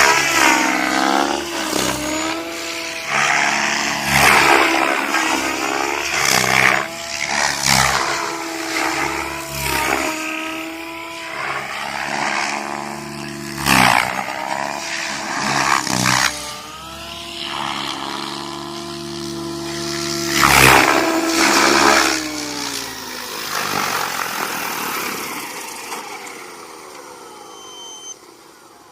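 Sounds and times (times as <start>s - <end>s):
rc helicopter motor and rotor: 0.0s - 28.9s
rotor blades whooshing: 0.0s - 28.9s.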